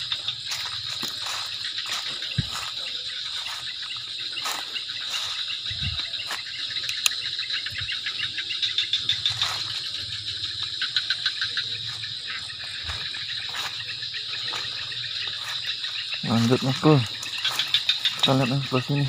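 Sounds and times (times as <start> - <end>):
crickets and insects chirring: 0.0 - 19.0
dull low thuds: 2.0 - 2.8, 5.6 - 6.2.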